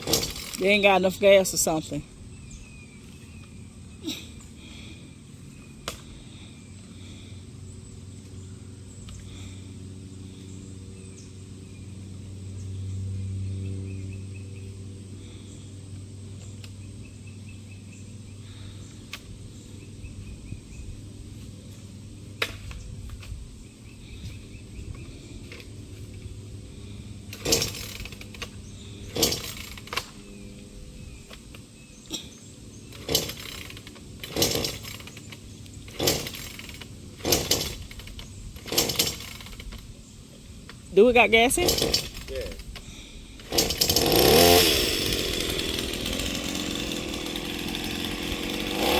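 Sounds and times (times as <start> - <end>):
chainsaw engine running unsteadily: 0.0 - 2.0, 26.8 - 30.3, 32.1 - 39.8, 41.3 - 48.9
chainsaw revving bursts: 0.0 - 2.0, 27.2 - 30.4, 32.1 - 39.8, 41.0 - 48.9.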